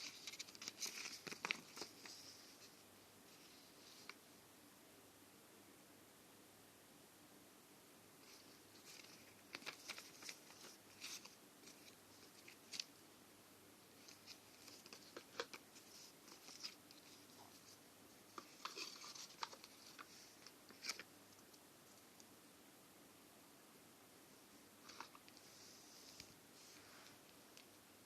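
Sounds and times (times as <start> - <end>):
hands handling phone packaging: 0.0 - 2.4, 8.3 - 12.9, 14.0 - 17.6, 18.3 - 21.1.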